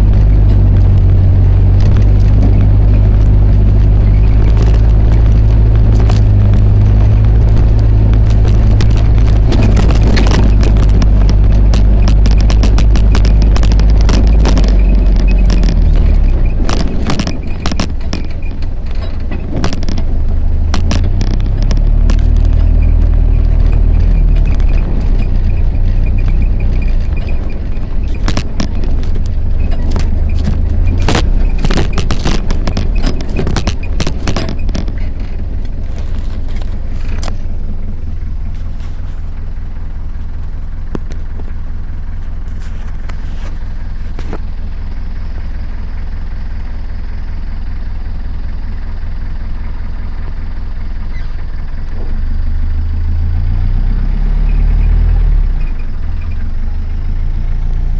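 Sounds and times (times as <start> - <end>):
knocks and rattles from bumps: 0.0 - 39.3
vehicle engine and road rumble: 0.0 - 57.9.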